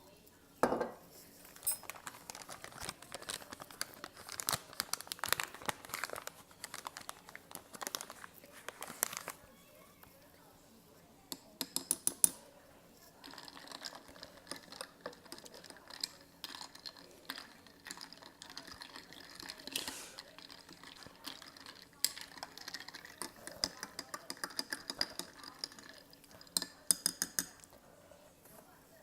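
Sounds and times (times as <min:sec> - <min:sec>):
utensils clinking against bowl: 0:00.6 - 0:03.0, 0:11.3 - 0:12.4, 0:13.0 - 0:27.8.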